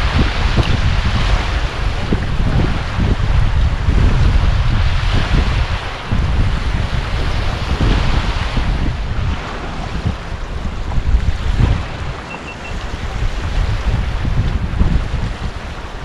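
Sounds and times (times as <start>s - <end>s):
wind buffeting microphone: 0.0s - 16.0s
faint short high beeps: 12.3s - 12.9s.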